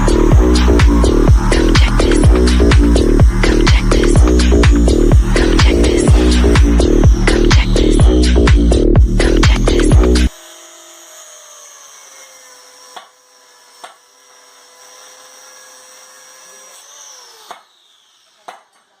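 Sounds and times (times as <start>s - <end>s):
small motor whining: 9.0s - 19.0s.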